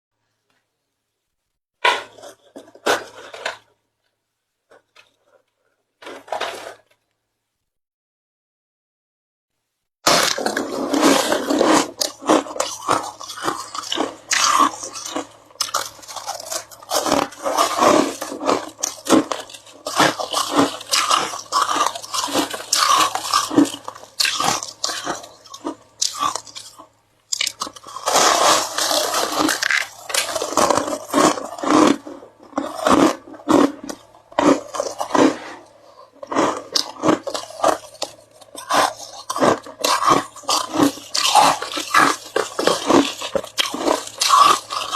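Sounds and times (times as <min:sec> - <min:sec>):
ice crunching being chewed: 0:10.0 - 0:44.9.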